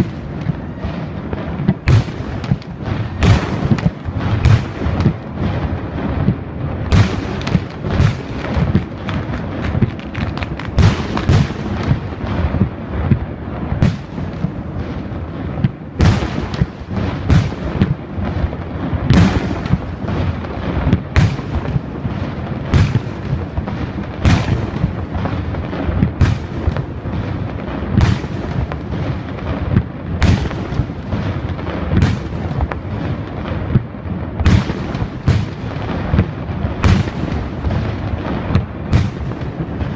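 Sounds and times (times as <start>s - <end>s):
fireworks bangs: 0.0s - 39.9s
low rumble of booms: 0.0s - 39.9s.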